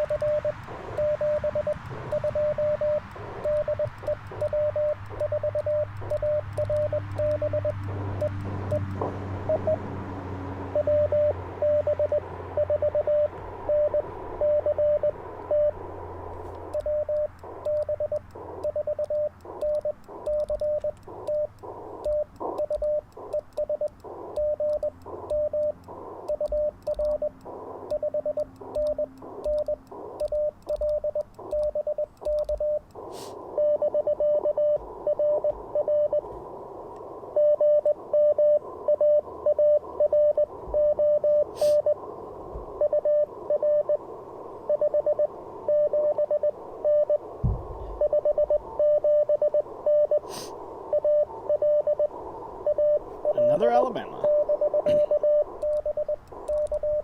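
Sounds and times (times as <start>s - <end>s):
radio band hiss: 0.0s - 6.2s, 7.7s - 9.3s, 15.1s - 26.3s, 27.1s - 30.2s, 32.8s - 33.6s, 41.4s - 44.6s, 49.6s - 57.0s
morse code tones: 0.0s - 9.9s, 10.7s - 15.8s, 16.6s - 32.9s, 50.9s - 57.0s
click: 19.0s - 33.0s
low thump: 47.4s - 47.8s.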